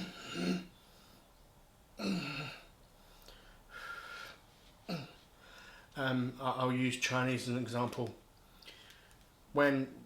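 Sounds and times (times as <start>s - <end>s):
breath: 3.0s - 4.4s, 5.4s - 6.0s, 8.6s - 9.2s.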